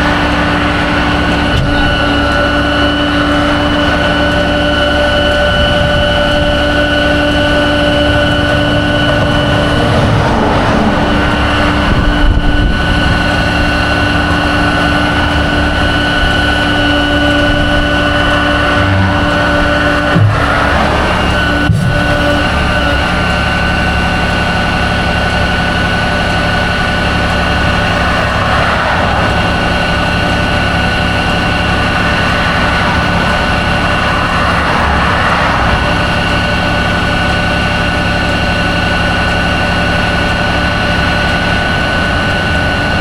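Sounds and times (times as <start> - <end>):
steady whine: 0.0 - 43.0
vehicle engine and road drone: 0.0 - 43.0.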